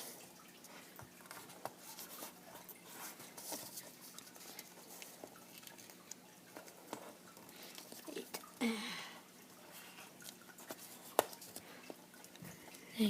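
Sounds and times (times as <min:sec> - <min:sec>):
paper rustling and crinkling: 0:00.9 - 0:08.4.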